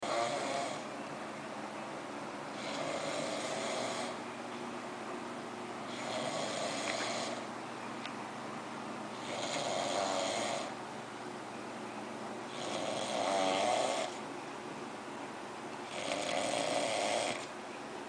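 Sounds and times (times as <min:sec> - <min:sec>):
person snoring: 0:00.0 - 0:00.9, 0:02.5 - 0:04.2, 0:05.9 - 0:07.4, 0:09.2 - 0:10.7, 0:12.5 - 0:14.2, 0:15.9 - 0:17.5.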